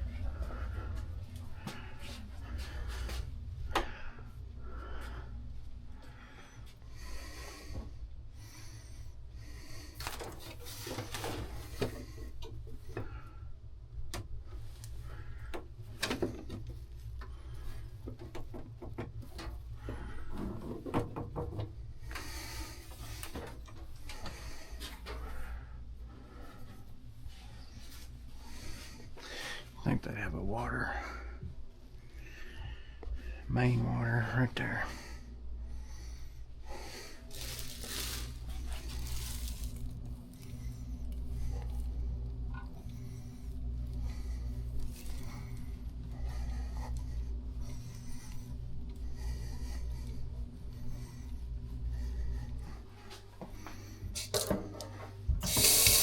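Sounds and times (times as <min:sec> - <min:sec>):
steady low rumble: 0:00.0 - 0:20.8, 0:21.7 - 0:55.4
objects being handled and moved: 0:09.7 - 0:13.2, 0:14.2 - 0:25.4, 0:36.8 - 0:56.0.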